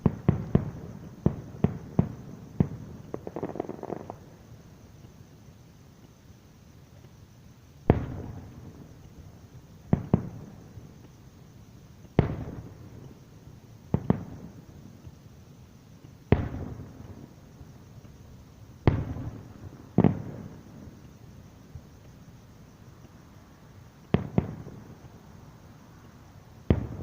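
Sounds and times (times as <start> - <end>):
firework shells bursting: 1.6 - 4.3.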